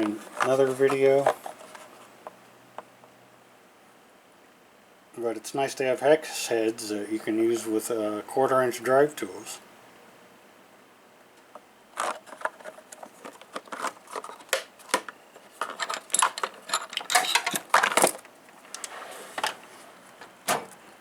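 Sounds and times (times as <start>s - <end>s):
metal hand tools clinking: 15.4s - 18.2s.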